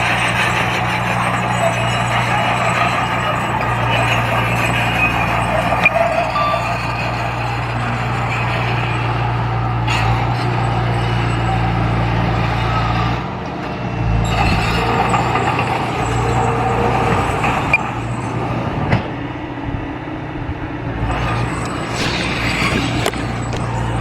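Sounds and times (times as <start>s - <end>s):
diesel engine running under load: 0.0s - 24.0s
sharp clanks: 21.1s - 24.0s.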